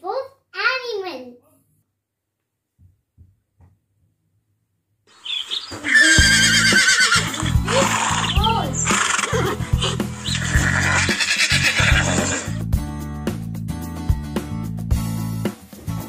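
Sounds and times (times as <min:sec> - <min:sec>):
animal wavering cry: 0:05.1 - 0:12.6
background music with steady beat: 0:06.2 - 0:16.0.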